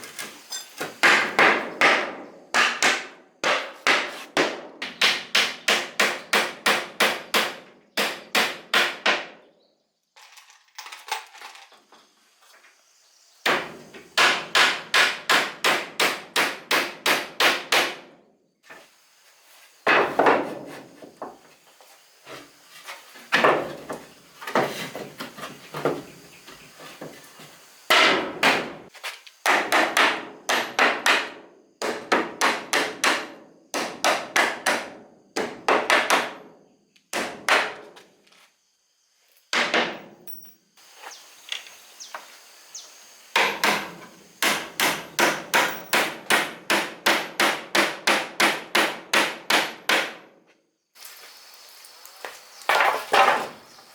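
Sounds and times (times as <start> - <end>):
hammering on wood: 1.0 - 9.4, 13.5 - 18.1, 27.9 - 28.8, 29.4 - 36.5, 37.1 - 37.9, 43.4 - 50.3.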